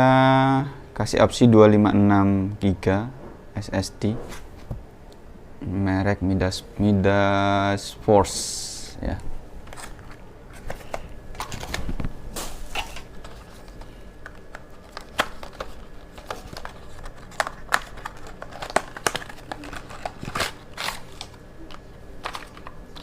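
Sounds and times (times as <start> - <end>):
plastic packaging crinkling and tearing: 9.6 - 23.0.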